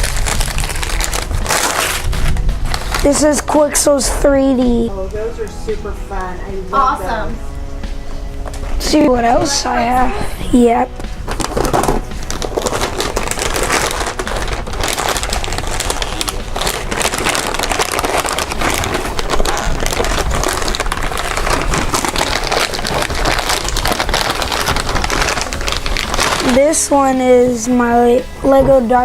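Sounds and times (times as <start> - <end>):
wrapping paper tearing and crumpling: 0.0 - 4.2, 11.2 - 27.7.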